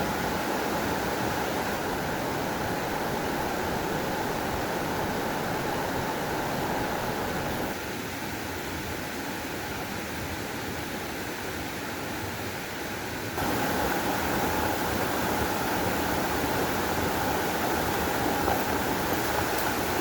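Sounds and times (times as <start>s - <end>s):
water rushing: 0.0s - 7.8s, 13.4s - 20.0s.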